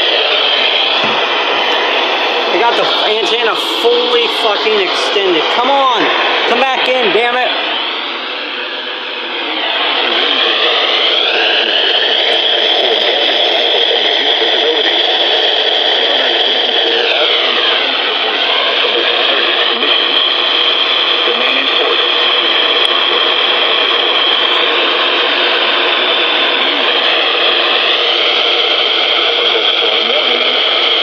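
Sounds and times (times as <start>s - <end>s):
radio static hiss: 0.0s - 31.0s.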